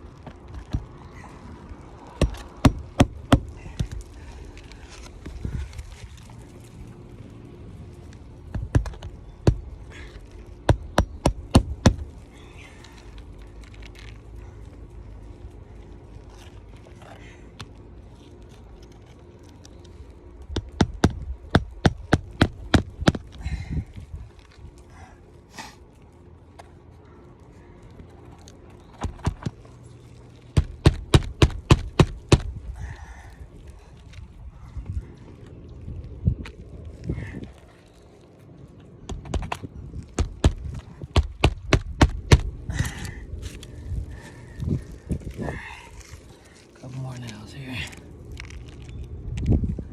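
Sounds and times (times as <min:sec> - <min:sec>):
hammer driving nails into shingle: 0:02.2 - 0:04.0, 0:30.6 - 0:32.5, 0:40.2 - 0:42.5.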